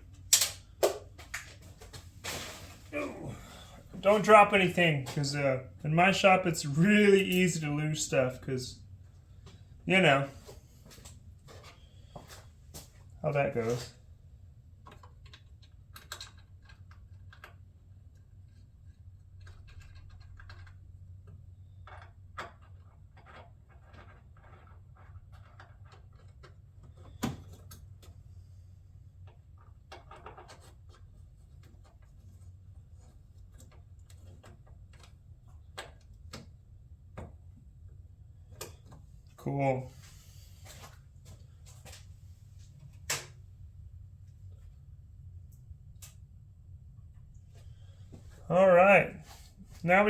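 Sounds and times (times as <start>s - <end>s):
low steady hum: 0.0s - 22.4s, 30.9s - 50.0s.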